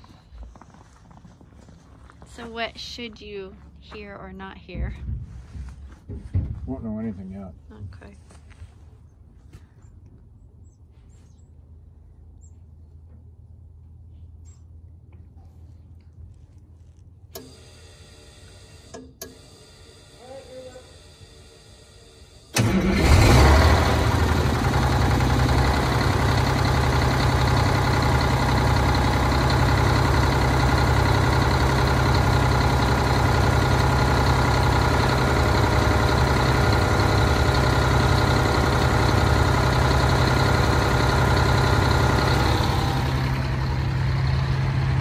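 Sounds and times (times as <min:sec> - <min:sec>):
diesel engine idling: 0:17.4 - 0:45.0.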